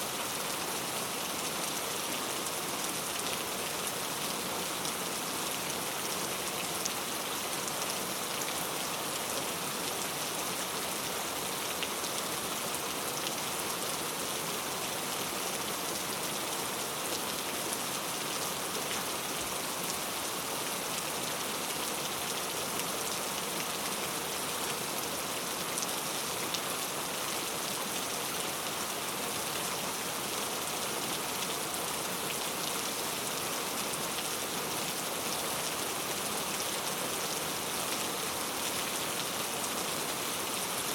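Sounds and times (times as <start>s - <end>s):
heavy rain on a tent: 0.0s - 40.9s.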